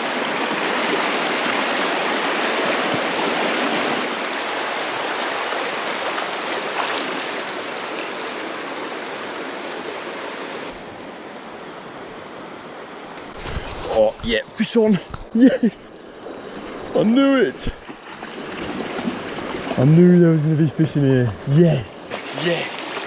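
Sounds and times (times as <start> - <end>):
rushing creek water: 0.0 - 23.0.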